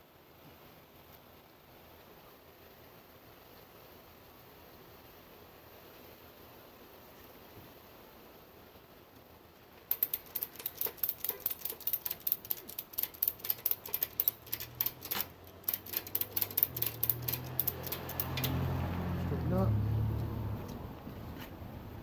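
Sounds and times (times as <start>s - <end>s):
ratchet strap clicking: 9.9s - 18.7s.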